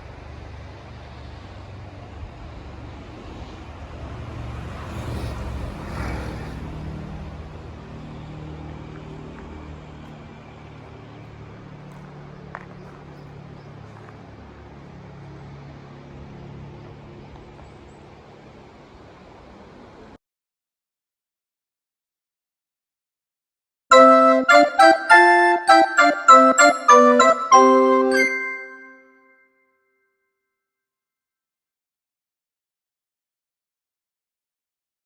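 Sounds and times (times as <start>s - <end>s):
traffic rumble: 0.1s - 20.2s
vehicle passing: 3.3s - 17.6s.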